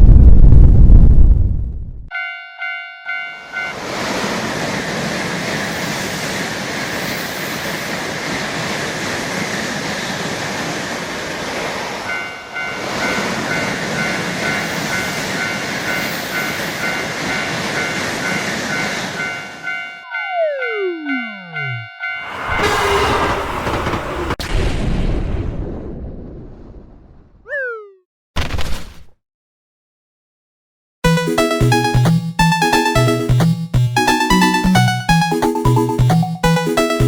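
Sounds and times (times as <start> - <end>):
railroad crossing bell clanging: 2.1 - 5.1, 11.7 - 23.2
train rushing past: 3.5 - 24.4.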